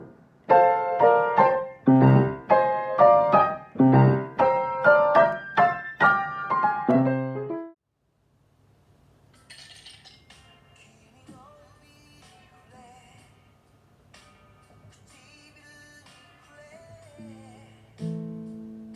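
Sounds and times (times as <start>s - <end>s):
piano chords: 0.0s - 7.8s, 17.2s - 18.9s.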